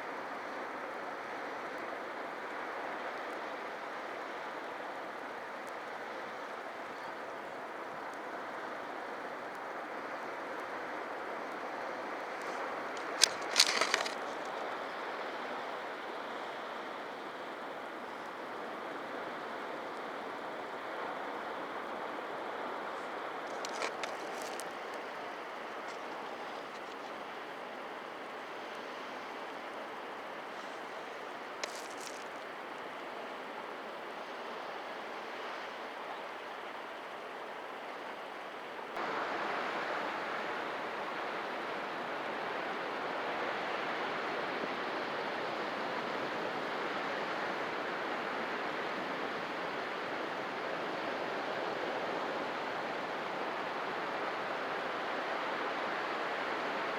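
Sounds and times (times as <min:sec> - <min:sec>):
surf washing against rocks: 0:11.5 - 0:14.8, 0:22.6 - 0:28.1
sharp clicks of water: 0:11.6 - 0:15.0, 0:23.1 - 0:27.4, 0:30.5 - 0:32.5.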